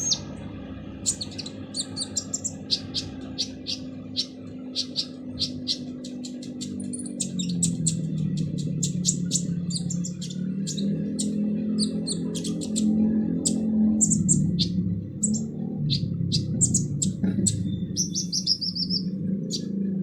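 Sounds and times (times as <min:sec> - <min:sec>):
bird chattering chirps: 0:00.0 - 0:19.8
low hum: 0:00.0 - 0:20.0.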